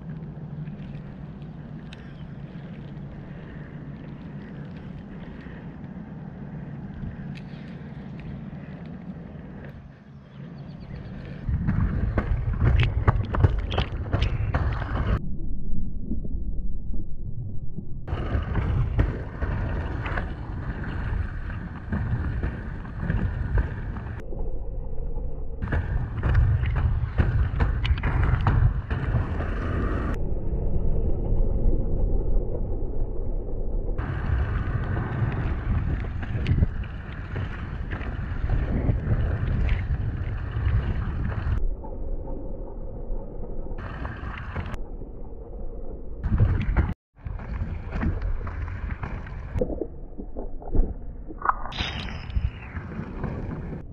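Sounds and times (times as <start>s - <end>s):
wind buffeting microphone: 0.0s - 15.2s, 25.6s - 32.8s, 34.0s - 41.6s, 46.2s - 49.6s, 51.7s - 53.9s
skate wheels rumbling on dirt: 10.8s - 15.2s, 18.1s - 24.2s, 25.6s - 30.2s, 34.0s - 41.6s, 46.2s - 49.6s, 51.8s - 53.9s.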